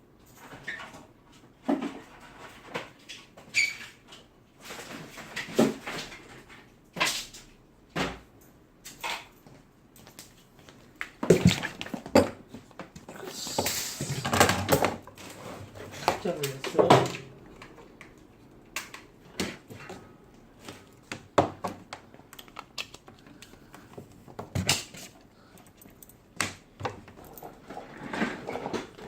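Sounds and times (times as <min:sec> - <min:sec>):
rustling and clattering: 0:23.0 - 0:29.0.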